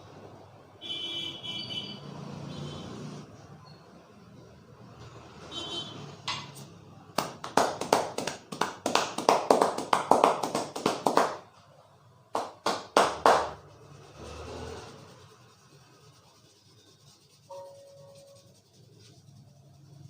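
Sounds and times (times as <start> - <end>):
hands slapping head in massage: 6.3 - 11.5, 12.4 - 13.6.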